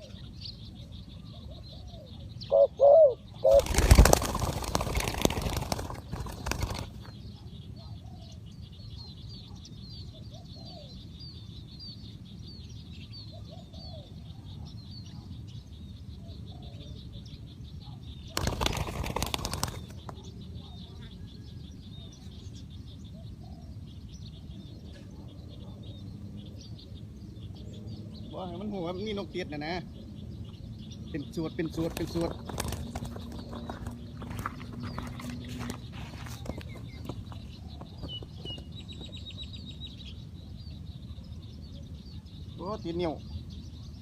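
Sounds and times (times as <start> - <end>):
small birds chirping: 0.0 - 44.0
low dove coos: 1.2 - 3.7
dove wings flapping: 3.4 - 7.2, 18.3 - 20.2, 31.8 - 38.7.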